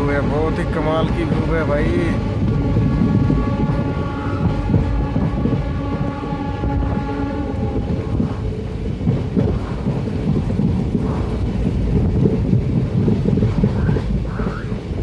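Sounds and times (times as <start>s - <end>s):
train rumbling on track: 0.0s - 15.0s
train horn held tone: 1.9s - 8.3s.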